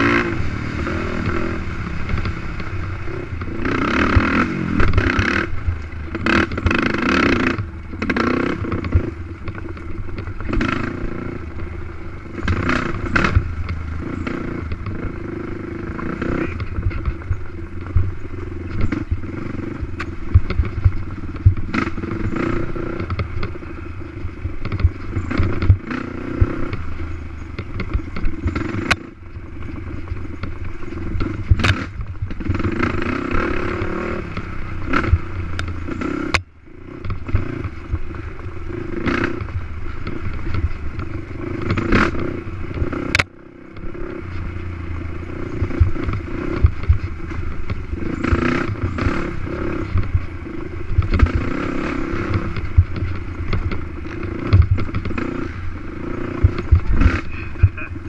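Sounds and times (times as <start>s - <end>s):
knocks and rattles from bumpy ride: 0.0s - 58.0s
quad engine revving: 0.0s - 58.0s.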